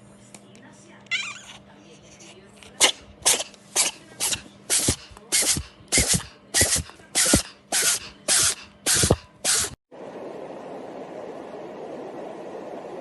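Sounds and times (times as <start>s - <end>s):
faint music: 0.0s - 12.1s
short hissing bursts: 3.3s - 9.8s.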